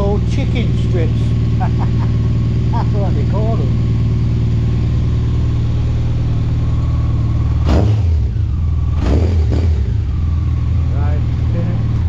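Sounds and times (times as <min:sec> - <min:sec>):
motorcycle engine idling: 0:00.0 - 0:12.0.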